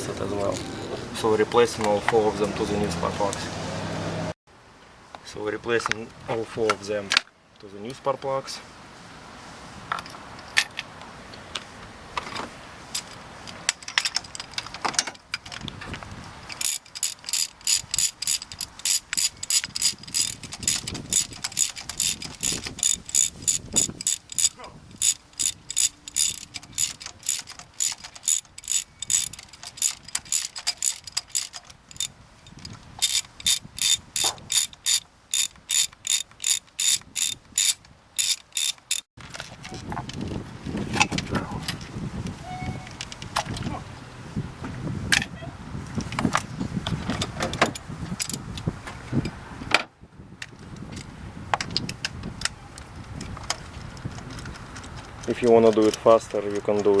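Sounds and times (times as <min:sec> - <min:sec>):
socket ratchet clicking rapidly: 0:16.6 - 0:32.1, 0:33.0 - 0:39.1.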